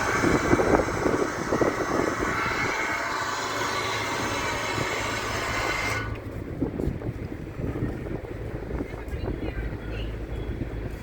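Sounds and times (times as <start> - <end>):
loud hiss: 0.0 - 6.2
engine humming: 0.0 - 11.0.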